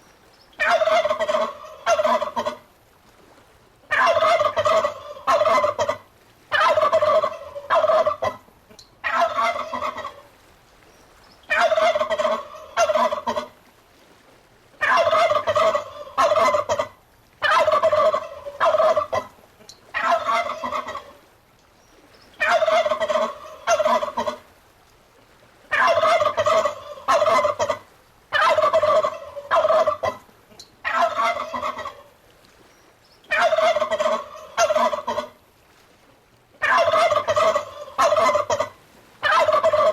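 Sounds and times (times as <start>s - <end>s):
turkey gobbling: 0.6s - 2.6s, 3.9s - 8.4s, 9.0s - 10.2s, 11.5s - 13.5s, 14.8s - 19.3s, 19.9s - 21.2s, 22.4s - 24.4s, 25.7s - 32.1s, 33.3s - 35.4s, 36.6s - 39.9s.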